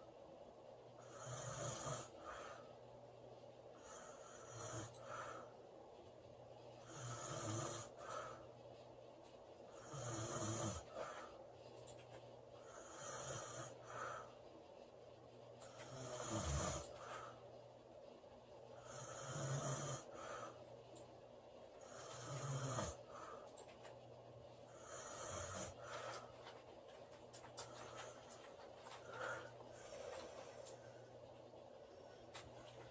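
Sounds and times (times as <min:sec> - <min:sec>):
woman snoring: 0:01.0 - 0:02.5, 0:03.8 - 0:05.1, 0:06.8 - 0:08.1, 0:09.7 - 0:11.1, 0:12.6 - 0:14.0, 0:15.7 - 0:17.2, 0:18.8 - 0:20.6, 0:21.8 - 0:23.1, 0:24.7 - 0:26.0.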